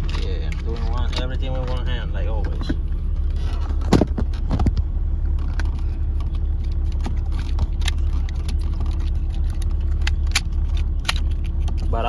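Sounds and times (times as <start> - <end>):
car engine low hum: 0.0 - 12.0.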